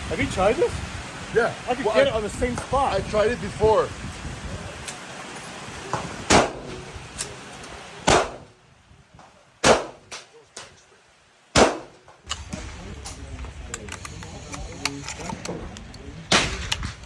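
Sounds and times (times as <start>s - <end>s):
faint gunshots: 6.3s - 6.8s, 8.0s - 8.5s, 9.6s - 10.3s, 11.6s - 13.0s, 16.3s - 17.0s
loud sharp gunshots: 6.3s - 6.8s, 8.0s - 8.6s, 9.6s - 10.2s, 11.5s - 12.9s, 16.3s - 16.8s.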